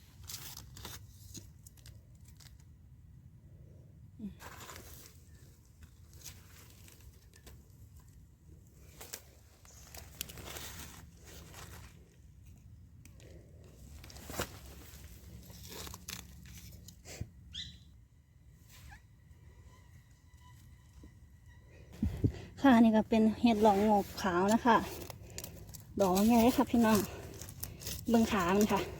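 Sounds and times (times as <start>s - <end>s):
dry leaves rustling and crunching: 8.8s - 12.2s, 14.0s - 16.8s, 23.6s - 28.9s.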